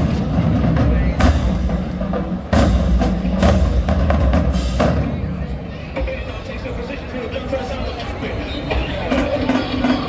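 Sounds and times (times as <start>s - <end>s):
bass drums: 0.0s - 5.6s
drum and rim hits: 0.0s - 6.4s.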